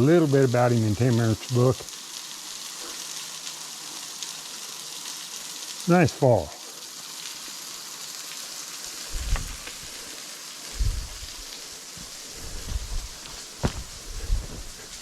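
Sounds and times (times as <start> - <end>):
waterfall hiss: 0.0 - 15.0
low rumbles on microphone: 9.1 - 9.7, 10.8 - 15.0.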